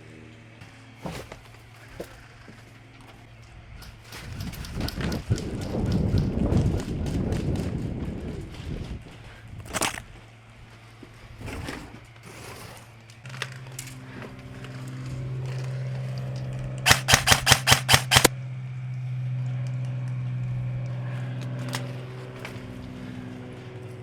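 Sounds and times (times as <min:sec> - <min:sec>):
steady low hum: 0:13.3 - 0:24.0
airsoft rifle shots: 0:16.9 - 0:18.3.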